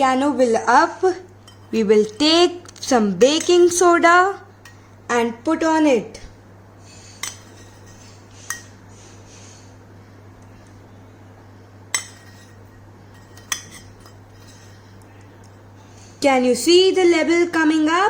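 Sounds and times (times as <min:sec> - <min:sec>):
spoon clinking against dish: 0:01.4 - 0:02.4, 0:03.3 - 0:03.8, 0:07.2 - 0:08.8, 0:11.9 - 0:15.1.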